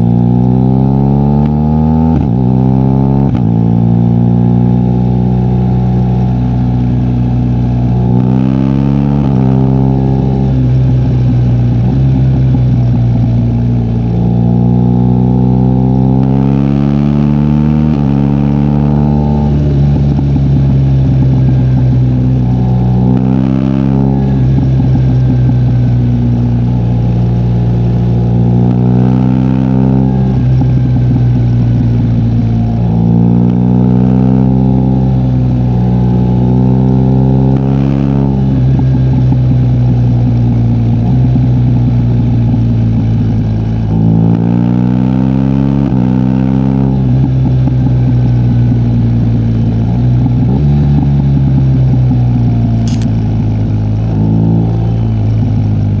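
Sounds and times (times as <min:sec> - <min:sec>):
motorcycle engine revving: 0:00.0 - 0:39.2, 0:51.5 - 0:55.9.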